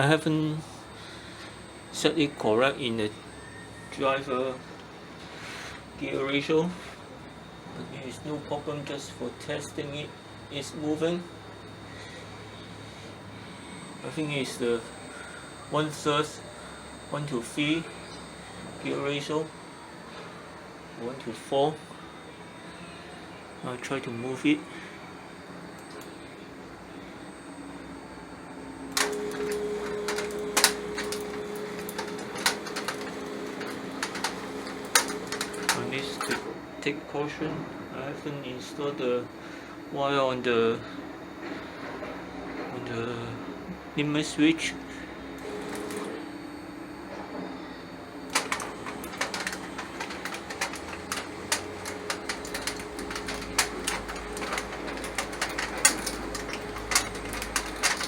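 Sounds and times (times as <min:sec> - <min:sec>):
clicks and rattles: 0:29.0 - 0:36.4, 0:48.3 - 0:58.0.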